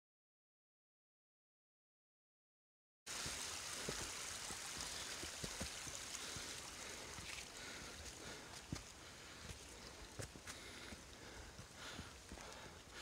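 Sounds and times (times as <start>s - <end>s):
creek rushing: 3.1s - 11.2s
footsteps on trail: 3.1s - 13.0s.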